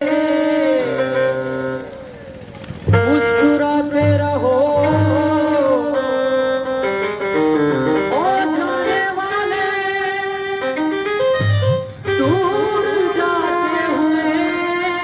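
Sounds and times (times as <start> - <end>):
instrumental backing: 0.0 - 15.0
song with sliding melody: 0.0 - 15.0.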